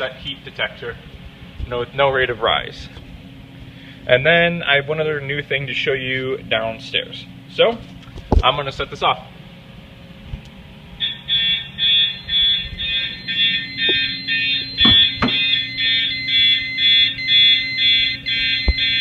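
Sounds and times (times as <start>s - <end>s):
fire alarm horns pulsing: 10.9s - 19.0s.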